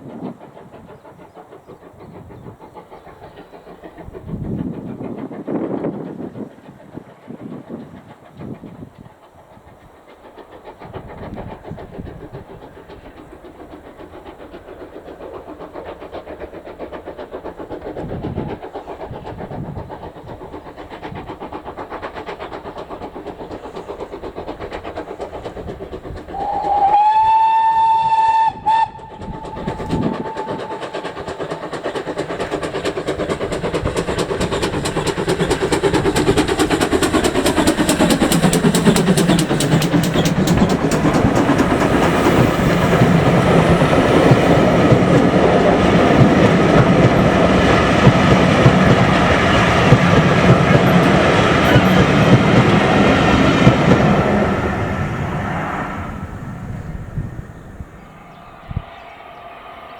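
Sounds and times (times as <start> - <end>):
steam locomotive chuffing: 0.0 - 59.9
steam whistle blast: 26.4 - 30.8.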